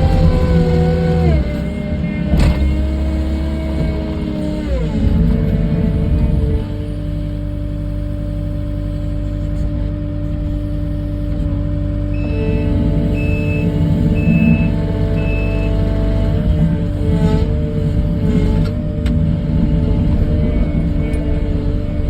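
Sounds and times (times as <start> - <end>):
diesel engine running: 0.0 - 22.0
reversing alarm beeps: 12.2 - 15.9.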